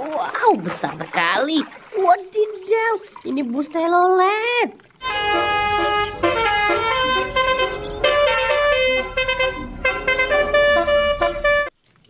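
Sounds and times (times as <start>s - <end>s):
multi-tone musical air horn: 5.0s - 11.7s.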